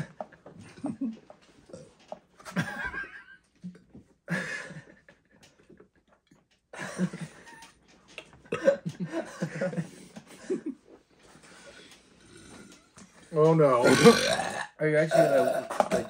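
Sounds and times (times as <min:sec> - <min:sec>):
people giggling: 0:00.0 - 0:01.6, 0:02.4 - 0:06.0, 0:06.7 - 0:11.0
people burping: 0:00.8 - 0:02.2, 0:08.4 - 0:09.6, 0:12.2 - 0:12.9, 0:13.7 - 0:16.0.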